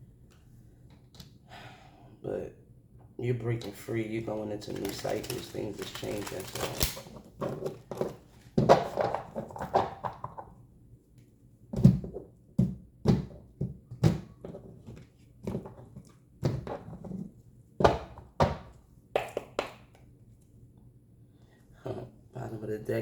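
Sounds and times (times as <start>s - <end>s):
cards pattering: 3.6s - 10.1s.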